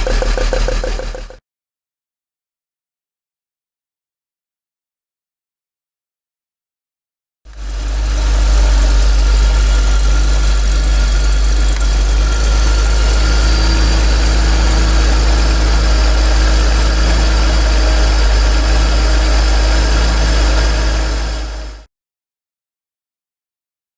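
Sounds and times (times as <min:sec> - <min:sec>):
car engine idling: 0:00.0 - 0:01.4, 0:07.5 - 0:21.8.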